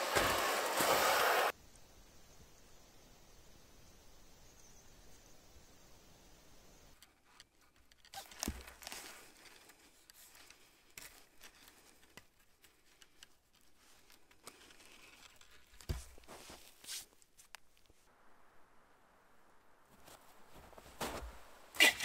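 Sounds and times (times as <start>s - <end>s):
rustling and crinkling handling noise: 7.0s - 18.1s.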